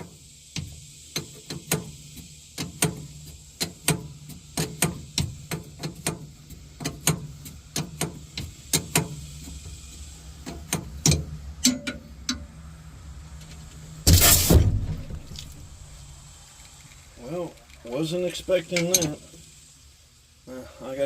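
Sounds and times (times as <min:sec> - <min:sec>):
steady low hum: 0:00.0 - 0:21.0
wrench clicking on metal fittings: 0:18.7 - 0:19.2.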